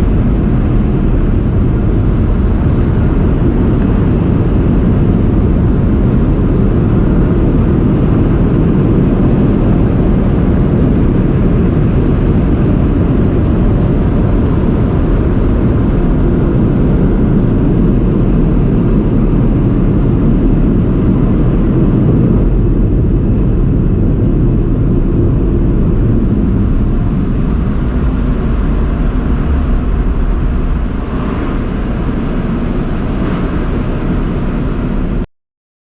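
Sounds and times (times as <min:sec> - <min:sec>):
car wash dryer blowers: 0:24.5 - 0:35.2.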